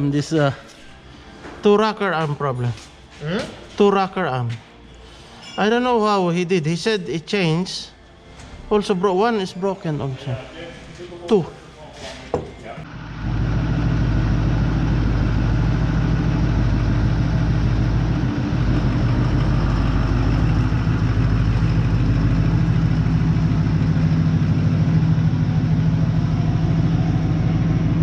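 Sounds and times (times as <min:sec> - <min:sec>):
truck engine idling: 0:12.9 - 0:28.0.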